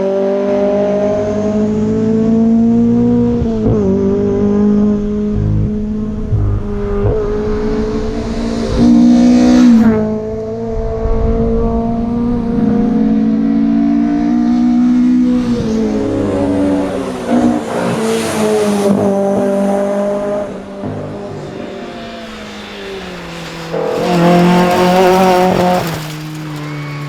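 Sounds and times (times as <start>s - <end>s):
racing car engine revving: 0.0s - 27.0s.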